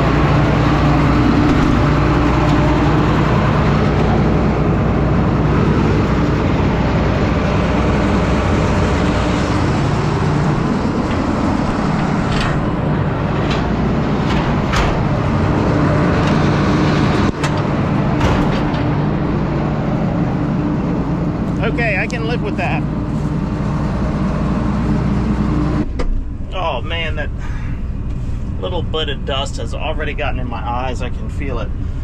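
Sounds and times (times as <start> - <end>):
combine harvester machinery drone: 0.0 - 32.0
sharp knocks and rattles: 8.6 - 19.2.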